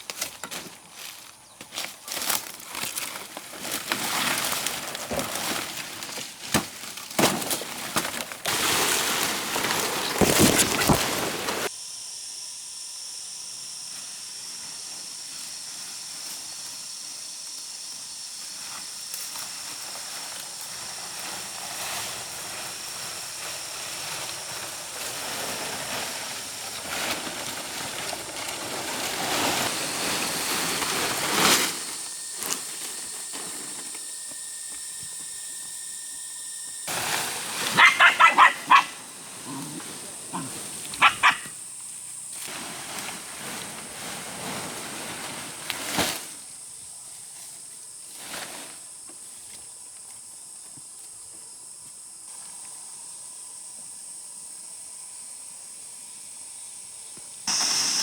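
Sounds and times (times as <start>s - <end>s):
steady high-pitched hiss: 0.0s - 58.0s
dog barking high: 37.7s - 39.7s, 40.3s - 41.6s.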